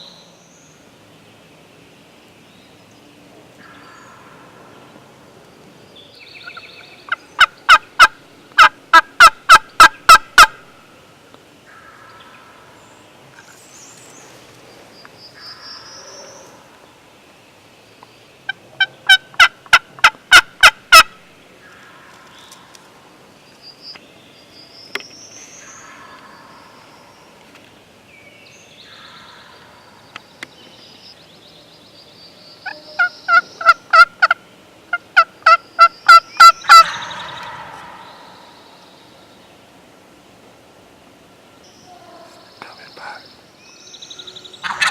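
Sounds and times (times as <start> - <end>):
faint songbirds chirping: 0.0 - 44.9
wild turkey calling: 6.4 - 10.7, 18.5 - 22.8, 25.6 - 27.0, 32.6 - 39.0, 44.0 - 44.9.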